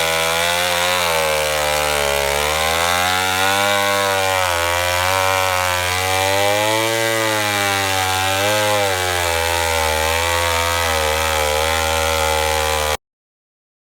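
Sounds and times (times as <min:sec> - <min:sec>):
chainsaw cutting through log: 0:00.0 - 0:13.0.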